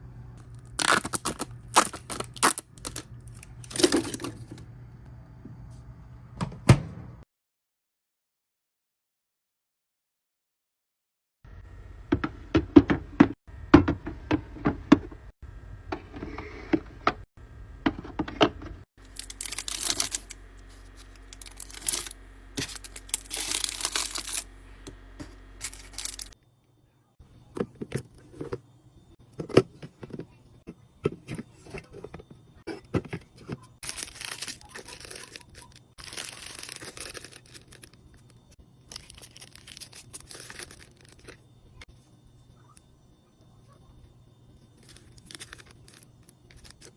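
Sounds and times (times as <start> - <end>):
packaging tearing and crinkling: 0.6 - 4.3, 19.0 - 24.5, 25.6 - 26.4, 33.8 - 38.3, 38.9 - 41.4, 44.8 - 46.9.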